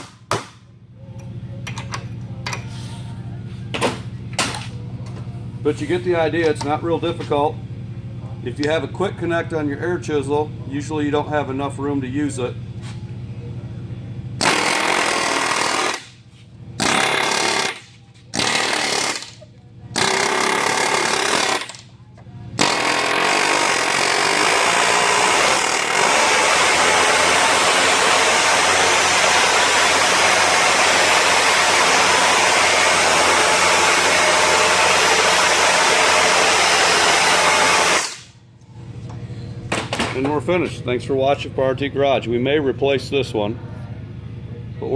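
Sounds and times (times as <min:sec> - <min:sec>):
air hammer riveting: 0:14.4 - 0:16.2, 0:16.8 - 0:21.9, 0:22.6 - 0:38.4.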